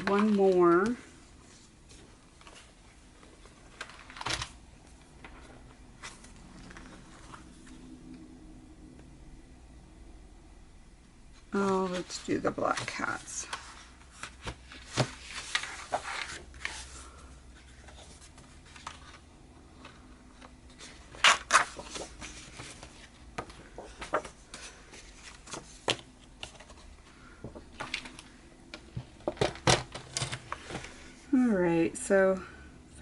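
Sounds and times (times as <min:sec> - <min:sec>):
paper rustling: 0:00.0 - 0:07.9, 0:11.6 - 0:28.4.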